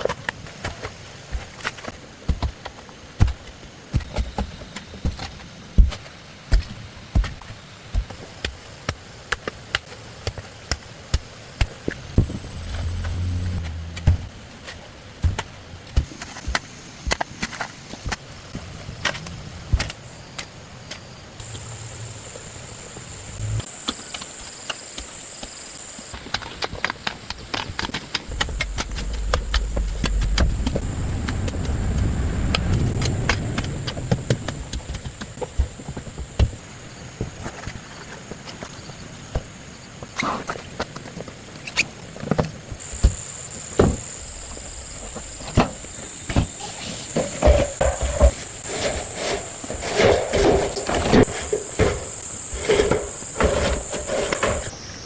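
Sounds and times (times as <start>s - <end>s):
low rumble: 12.0s - 14.6s, 28.2s - 35.3s.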